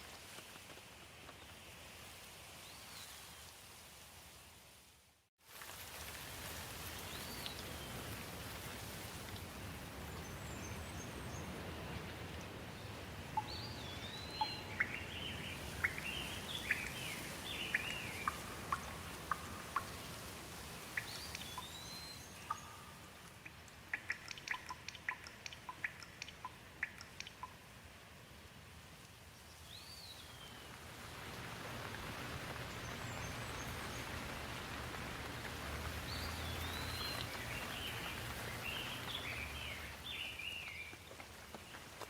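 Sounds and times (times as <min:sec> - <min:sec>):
steady rain: 0:00.0 - 0:42.0
sharp water drips: 0:05.7 - 0:28.0, 0:29.0 - 0:42.0
birds chirping: 0:13.4 - 0:20.2, 0:20.8 - 0:27.6, 0:35.9 - 0:41.0.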